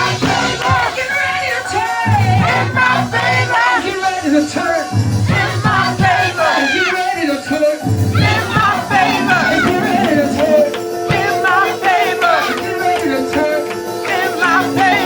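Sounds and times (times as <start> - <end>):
people singing: 0.0 - 15.0
bass line pulsing: 8.0 - 11.0.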